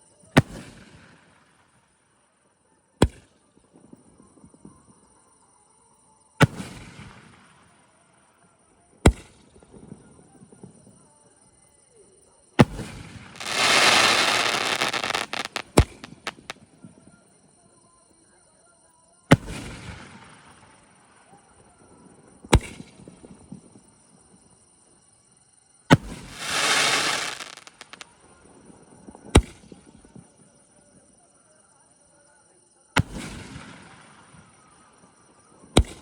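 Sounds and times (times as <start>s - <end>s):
quick firework pops: 0.4s - 1.2s, 3.0s - 3.3s, 9.1s - 9.5s, 12.6s - 16.6s, 19.3s - 20.6s, 22.5s - 23.1s, 25.9s - 28.0s, 29.4s - 29.9s, 33.0s - 34.4s, 35.8s - 36.0s
firework bangs: 12.6s - 16.5s, 25.9s - 28.0s.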